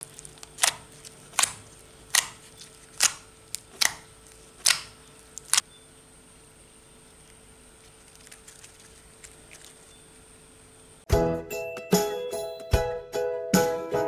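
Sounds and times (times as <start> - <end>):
faint steady hum: 0.0 - 11.1
sharp clicks: 0.2 - 5.7.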